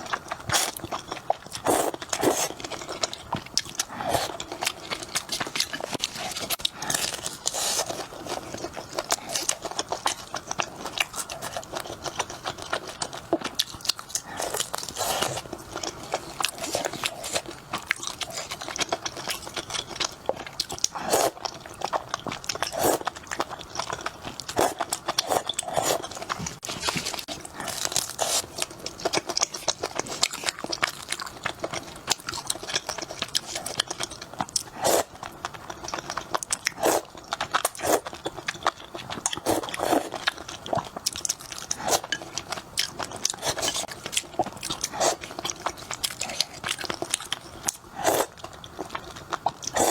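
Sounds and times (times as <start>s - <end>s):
person biting and chewing food: 0.0s - 49.9s.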